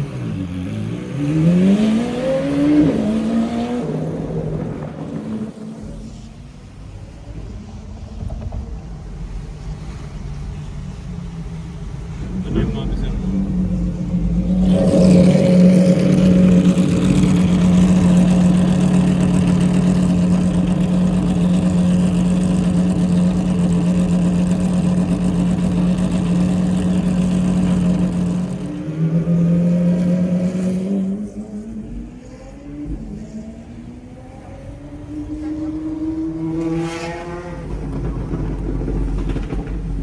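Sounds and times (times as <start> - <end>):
car engine droning: 0.0 - 40.0.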